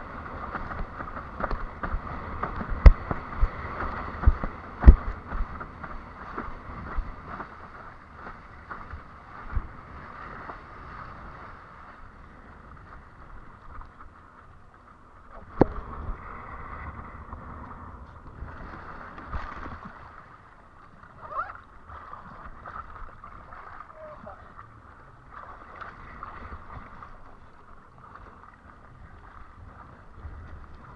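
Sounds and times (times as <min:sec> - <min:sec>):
water splashing against a board: 0:00.0 - 0:11.4, 0:12.9 - 0:28.8
wind on microphone: 0:00.0 - 0:11.5, 0:15.0 - 0:23.7.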